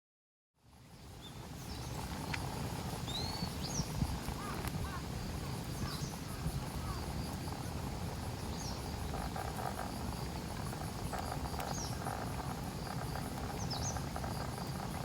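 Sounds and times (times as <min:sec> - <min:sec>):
insects chirping: 0:00.7 - 0:15.0
low steady rumble: 0:01.1 - 0:15.0
bird chirps: 0:03.0 - 0:04.6, 0:11.5 - 0:14.7.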